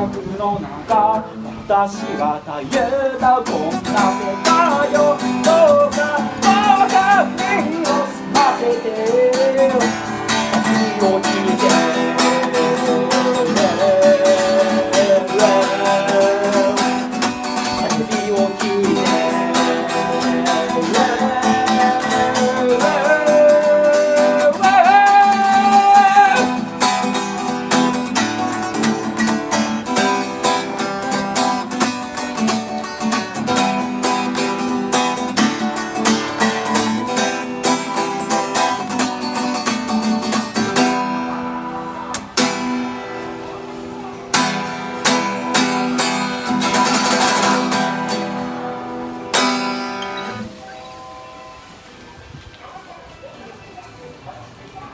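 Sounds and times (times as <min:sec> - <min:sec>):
person singing: 0:00.0 - 0:43.1
acoustic guitar strumming: 0:00.0 - 0:52.8.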